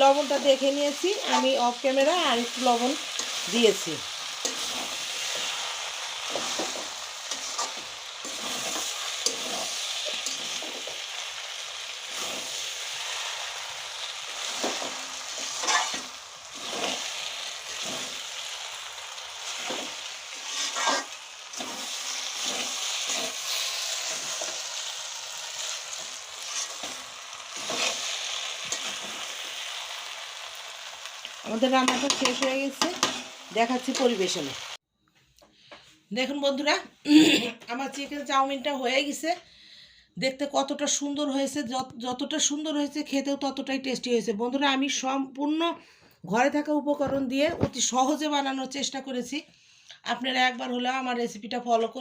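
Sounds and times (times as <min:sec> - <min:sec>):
noodles sizzling in a pan: 0:00.0 - 0:34.8
utensil striking a pan: 0:31.8 - 0:33.3.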